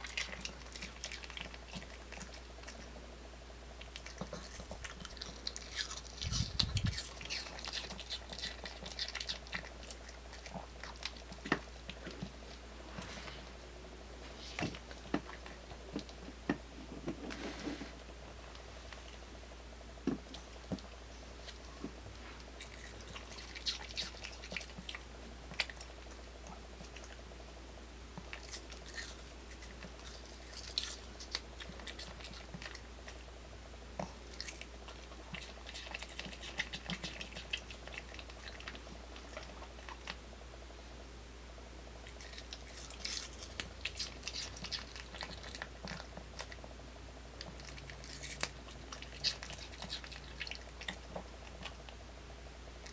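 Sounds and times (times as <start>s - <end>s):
dog crunching apple: 0.0s - 2.9s, 3.8s - 12.5s, 22.4s - 27.2s, 28.2s - 33.4s, 34.0s - 40.2s, 42.0s - 52.1s.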